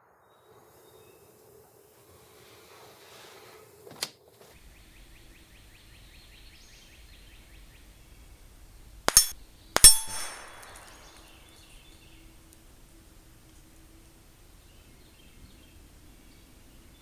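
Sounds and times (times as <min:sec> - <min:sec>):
rifle shots: 0:09.1 - 0:11.6
steel target ringing: 0:09.1 - 0:11.7.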